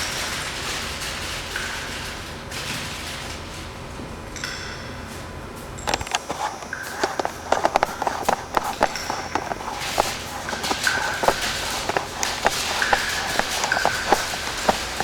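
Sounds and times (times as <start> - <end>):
ice popping and crackling: 5.9 - 15.0.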